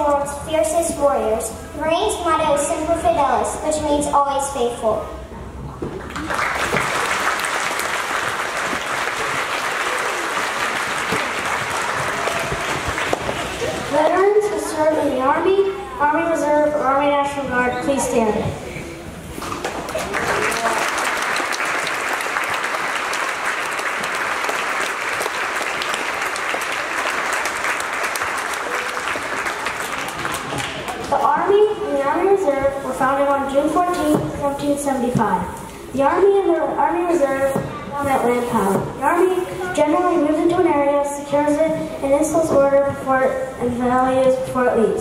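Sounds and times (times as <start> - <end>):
audience applause: 6.0 - 13.9, 19.5 - 31.1.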